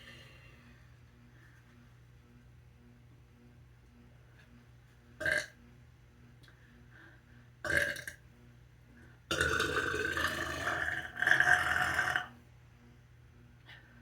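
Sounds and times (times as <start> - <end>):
person burping: 7.7 - 8.1, 9.3 - 12.3.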